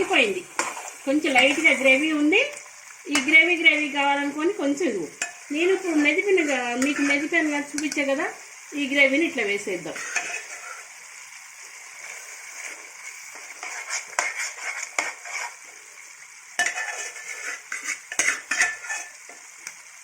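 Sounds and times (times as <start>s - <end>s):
curry sizzling: 0.0s - 20.0s
spoon scraping and clinking pot: 5.2s - 8.1s, 9.9s - 10.9s, 12.6s - 15.6s, 16.6s - 19.4s.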